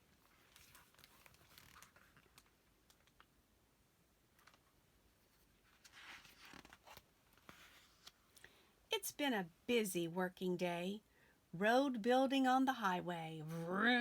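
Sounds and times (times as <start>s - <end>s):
paper pages rustling: 0.2s - 3.2s, 5.3s - 8.3s
pages turning clicks: 0.4s - 3.3s, 5.8s - 8.2s.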